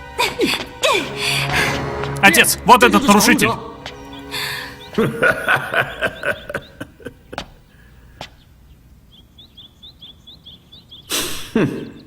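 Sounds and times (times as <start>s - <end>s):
small birds chirping: 2.3s - 12.0s.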